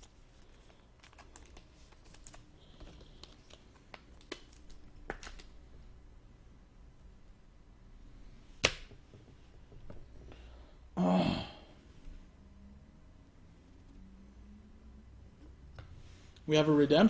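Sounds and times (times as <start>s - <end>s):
trading cards rustling and clicking: 0.0s - 5.6s.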